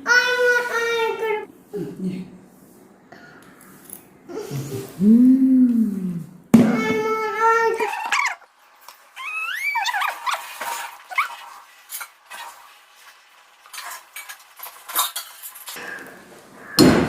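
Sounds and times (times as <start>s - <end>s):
high squeaky cries: 9.2s - 10.5s.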